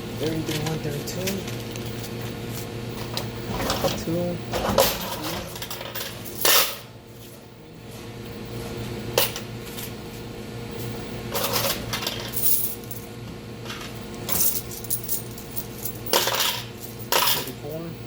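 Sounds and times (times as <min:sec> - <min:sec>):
coins clinking: 0:04.8 - 0:06.8, 0:11.4 - 0:13.1, 0:14.2 - 0:17.6.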